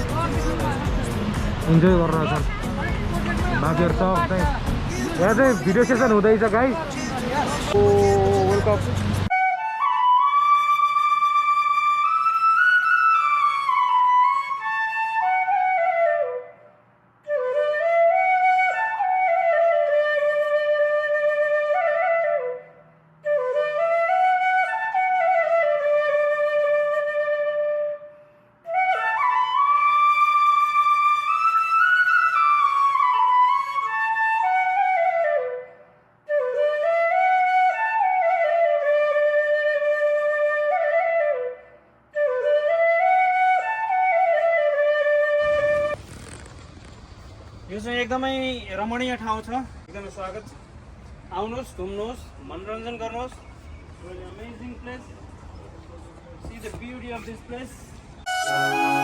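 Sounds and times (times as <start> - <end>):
slow flute melody: 7.7 - 46.4, 58.2 - 59.0.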